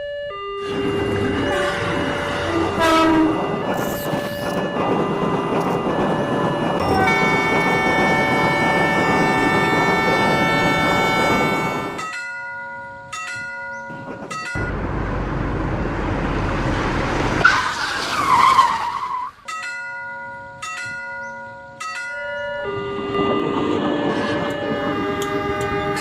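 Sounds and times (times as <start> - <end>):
crossing bell dinging: 0.0 - 14.8, 19.4 - 26.0
train horn: 0.6 - 4.0, 6.8 - 12.0, 22.7 - 26.0
train rushing rumble: 0.6 - 12.1, 13.8 - 19.3, 22.4 - 26.0.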